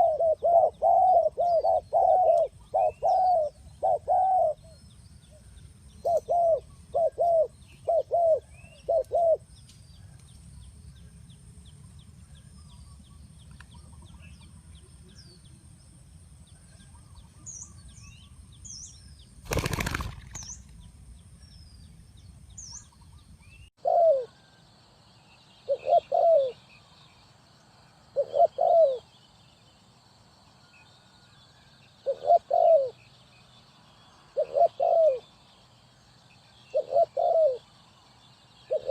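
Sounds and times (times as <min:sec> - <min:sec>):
doves cooing: 0:00.0 - 0:04.8, 0:06.0 - 0:09.4, 0:19.5 - 0:20.3, 0:23.8 - 0:24.5, 0:25.7 - 0:26.6, 0:28.2 - 0:29.1, 0:32.0 - 0:33.0, 0:34.4 - 0:35.3, 0:36.7 - 0:37.7, 0:38.7 - 0:38.9
small birds chirping: 0:00.0 - 0:24.6, 0:25.2 - 0:38.9.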